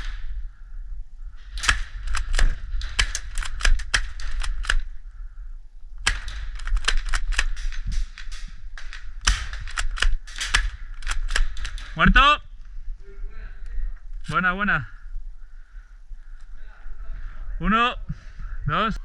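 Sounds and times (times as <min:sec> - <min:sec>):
airsoft guns firing: 0:01.4 - 0:05.0, 0:06.0 - 0:12.2.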